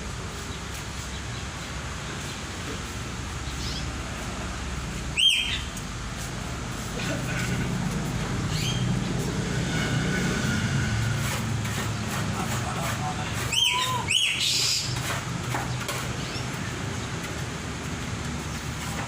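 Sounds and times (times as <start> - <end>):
bird calls: 3.4 - 4.0, 5.1 - 5.8, 8.5 - 8.9, 13.5 - 15.0.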